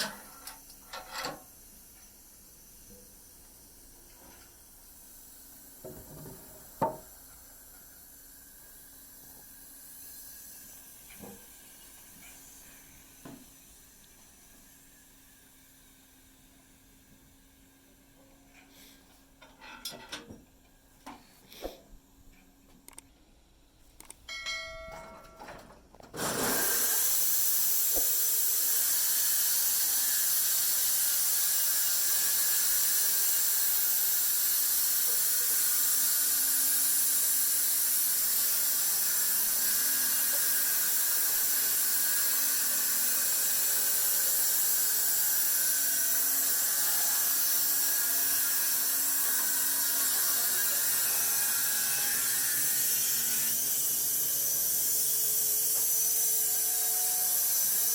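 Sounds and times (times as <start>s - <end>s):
sawmill saw cutting wood: 26.2s - 57.9s.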